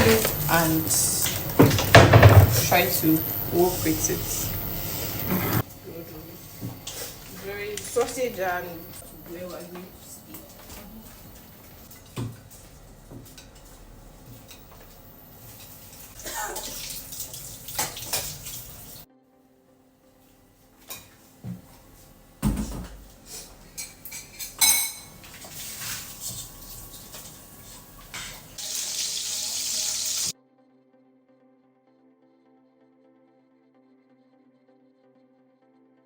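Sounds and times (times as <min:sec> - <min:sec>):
dishes and utensils clinking: 0:00.0 - 0:19.0, 0:22.4 - 0:28.7
water running from a tap: 0:00.0 - 0:19.1, 0:23.2 - 0:30.3.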